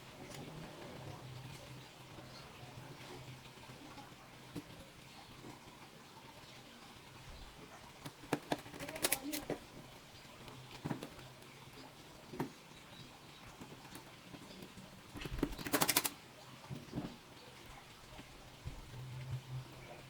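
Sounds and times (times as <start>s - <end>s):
laptop parts clicking: 8.0s - 9.6s, 15.2s - 16.2s.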